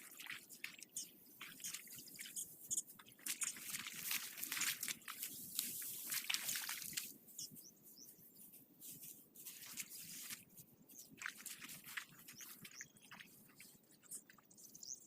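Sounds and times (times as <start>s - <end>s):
bird chirping: 0.6s - 3.6s, 7.4s - 8.5s, 12.2s - 15.0s
crunching in dry vegetation: 3.2s - 7.4s, 8.3s - 12.7s.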